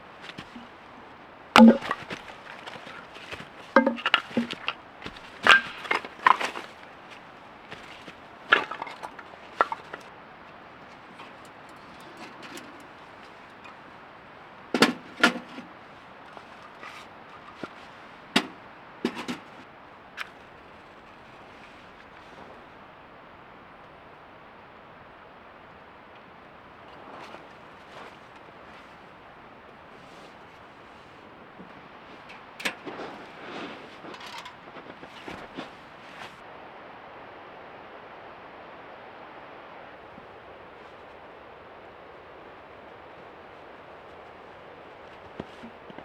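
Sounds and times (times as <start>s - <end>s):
axe chopping firewood: 1.6s - 10.1s, 14.8s - 15.7s, 18.4s - 19.5s
wood cracking apart: 1.6s - 10.1s.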